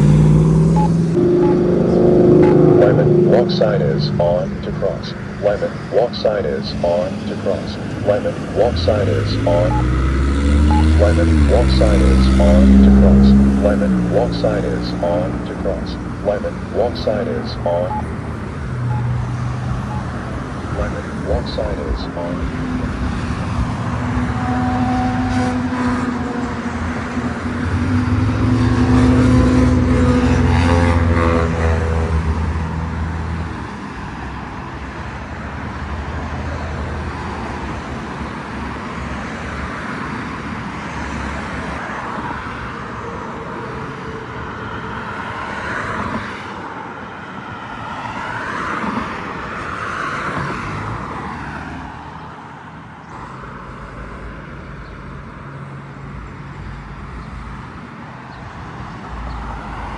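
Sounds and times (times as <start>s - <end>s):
vehicle engine: 0.0s - 42.2s
cars passing: 0.0s - 59.9s.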